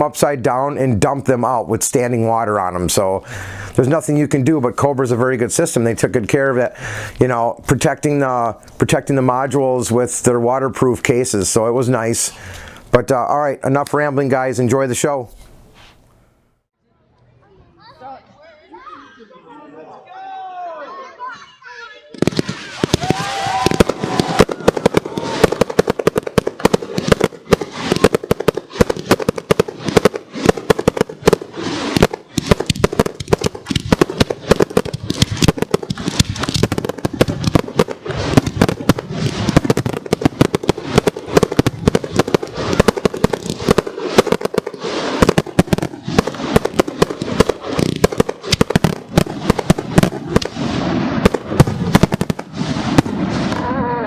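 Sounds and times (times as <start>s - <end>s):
fireworks bursting and crackling: 0.0s - 16.1s, 22.1s - 54.0s.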